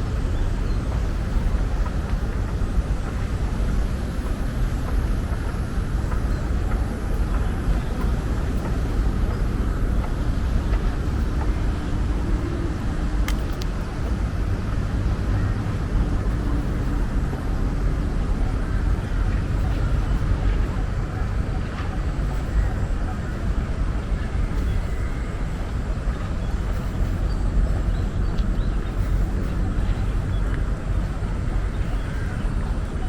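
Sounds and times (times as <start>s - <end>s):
low rumble of road traffic: 0.0s - 33.0s
sharp click: 13.2s - 13.8s.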